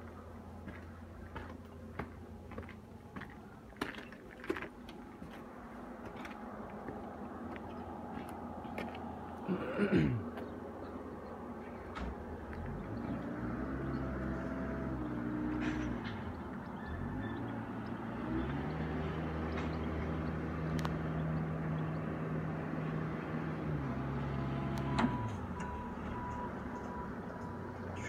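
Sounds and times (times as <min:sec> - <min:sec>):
vehicle reversing beep: 0:16.7 - 0:17.6, 0:24.0 - 0:28.0.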